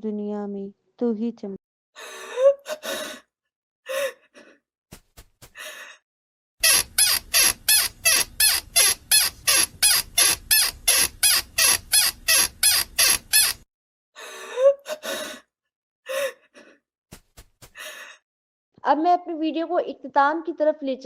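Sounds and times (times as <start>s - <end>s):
person panting: 2.0s - 3.3s, 3.9s - 4.6s, 5.4s - 6.0s, 14.2s - 15.4s, 17.6s - 18.2s.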